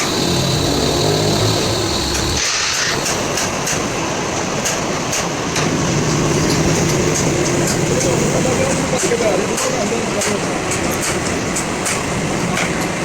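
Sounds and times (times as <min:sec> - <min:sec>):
truck engine humming: 0:00.0 - 0:03.0
hiss: 0:00.0 - 0:03.9.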